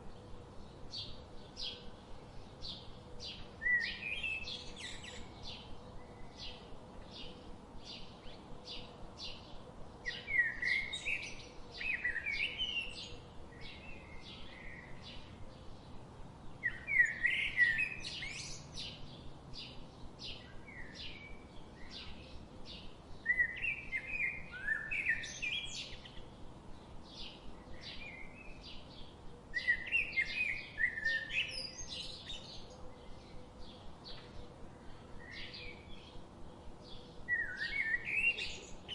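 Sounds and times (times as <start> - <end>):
songbird singing complex phrases: 0.0 - 38.9.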